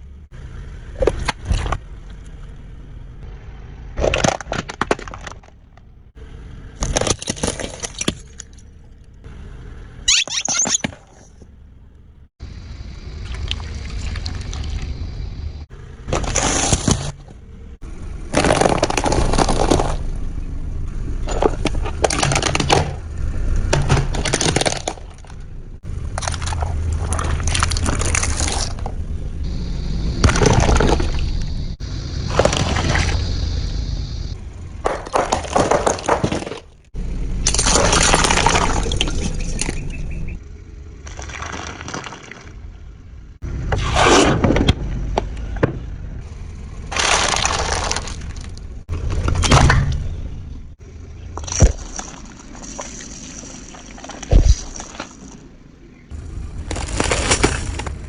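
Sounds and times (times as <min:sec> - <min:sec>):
car engine rumble: 0:00.0 - 0:58.0
tyres crushing objects: 0:03.9 - 0:06.2, 0:06.8 - 0:08.9, 0:16.0 - 0:20.3, 0:21.2 - 0:33.6, 0:34.3 - 0:39.9, 0:41.0 - 0:42.8, 0:46.8 - 0:55.7, 0:56.6 - 0:58.0.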